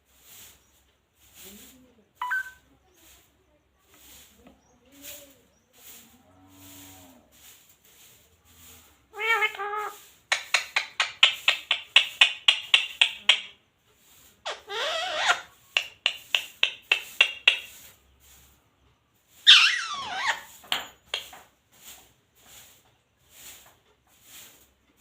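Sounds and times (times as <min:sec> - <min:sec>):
parrot calling and squawking: 0:09.1 - 0:10.9, 0:14.4 - 0:15.5, 0:19.5 - 0:20.5.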